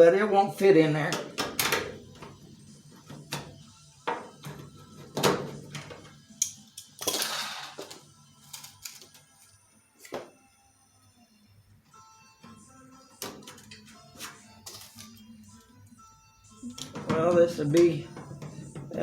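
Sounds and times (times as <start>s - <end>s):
metallic clicks of hand tools: 6.4s - 7.2s.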